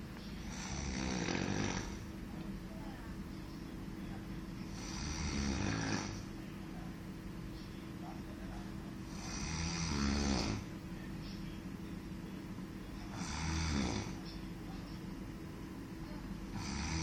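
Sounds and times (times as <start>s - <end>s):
man snoring: 0.5s - 2.0s, 4.8s - 6.2s, 9.1s - 10.7s, 13.1s - 14.2s, 16.5s - 17.0s.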